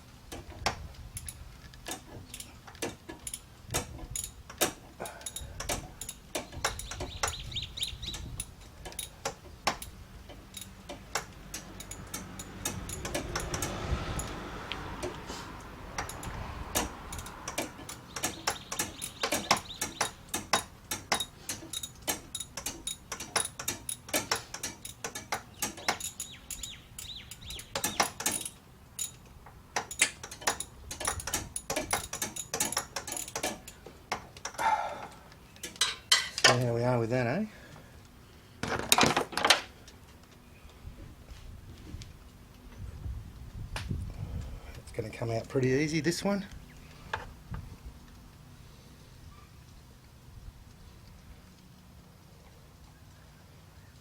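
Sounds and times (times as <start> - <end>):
ratchet clicking: 0.3 - 15.2, 16.0 - 34.7.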